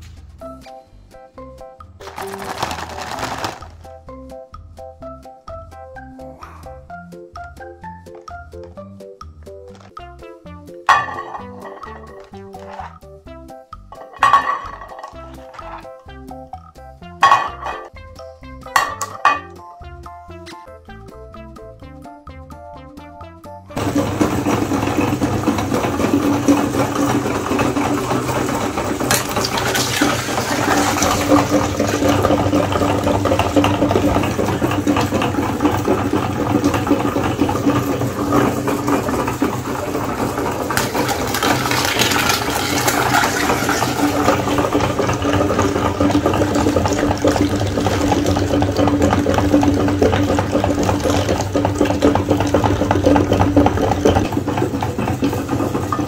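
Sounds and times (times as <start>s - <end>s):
electric meat grinder humming: 23.8s - 56.0s.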